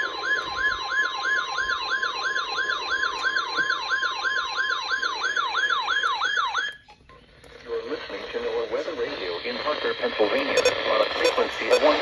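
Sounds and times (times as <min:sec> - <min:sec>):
electronic siren yelp: 0:00.0 - 0:06.7, 0:10.6 - 0:12.0
steady warning alarm tone: 0:10.5 - 0:12.0.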